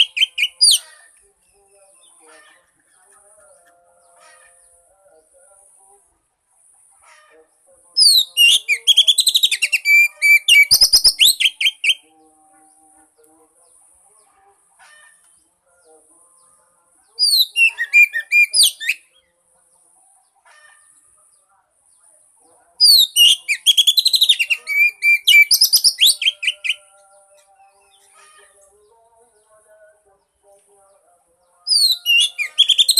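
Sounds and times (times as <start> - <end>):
bird singing whistled phrases: 0.0 - 0.8, 8.0 - 12.0, 17.2 - 19.1, 22.8 - 26.9, 31.7 - 32.9.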